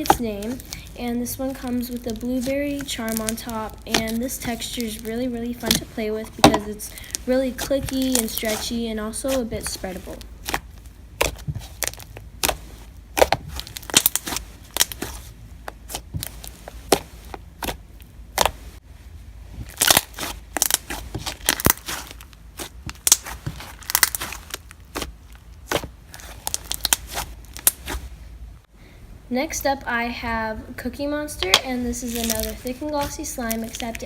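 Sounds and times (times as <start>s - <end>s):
slime squished by hand: 0.0s - 18.7s, 19.6s - 28.2s, 31.4s - 34.0s.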